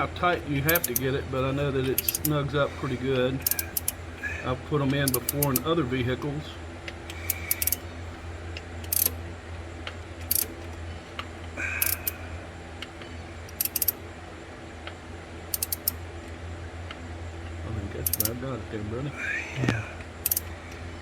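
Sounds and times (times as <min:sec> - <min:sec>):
steady low hum: 0:00.0 - 0:21.0
ratchet wrench clicking: 0:00.7 - 0:01.1, 0:02.0 - 0:02.4, 0:03.4 - 0:04.0, 0:05.0 - 0:05.7, 0:07.1 - 0:07.8, 0:08.8 - 0:09.2, 0:10.2 - 0:10.6, 0:11.8 - 0:12.2, 0:13.5 - 0:14.0, 0:15.5 - 0:16.0, 0:18.0 - 0:18.4, 0:20.2 - 0:20.5.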